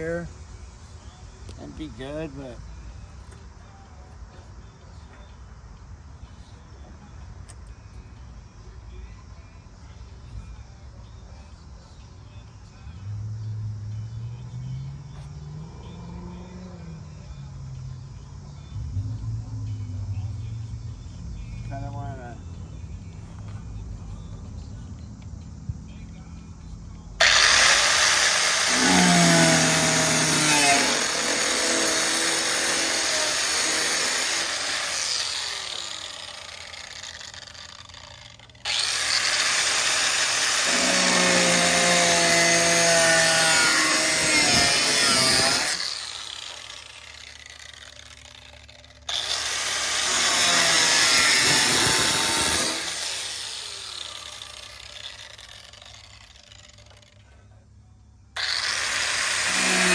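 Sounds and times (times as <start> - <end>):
power tool cutting sheet metal: 27.2 - 57.2, 58.4 - 59.9.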